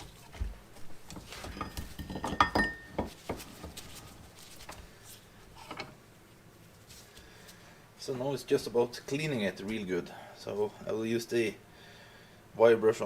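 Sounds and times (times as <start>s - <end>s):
metal tools clinking: 1.4s - 2.9s.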